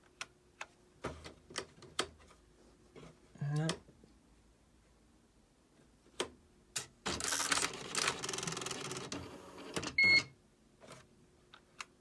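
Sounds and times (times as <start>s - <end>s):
typewriter mechanism rattling whirr: 7.1s - 9.9s.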